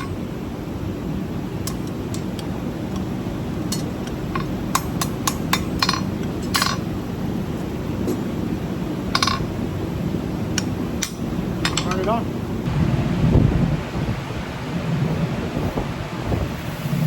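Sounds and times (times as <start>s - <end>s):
hammer striking horseshoe on anvil: 3.8s - 6.8s
steady low rumble: 12.3s - 17.0s.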